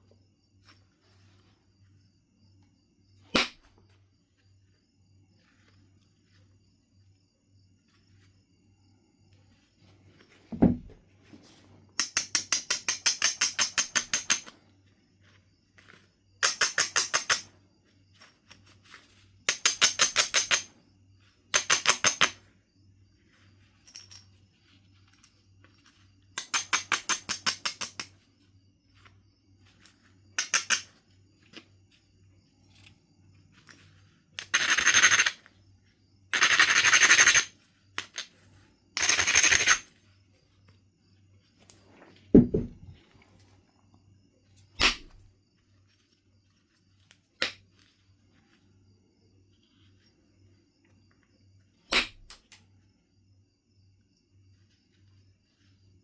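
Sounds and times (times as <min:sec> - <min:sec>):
low thump: 0:10.5 - 0:11.0, 0:42.4 - 0:43.0
stone scraping on stone: 0:36.4 - 0:37.5, 0:39.0 - 0:39.9.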